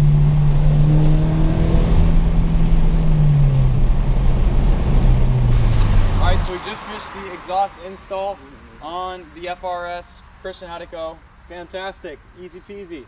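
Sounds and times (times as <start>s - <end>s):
car engine through loud exhaust: 0.0s - 8.9s.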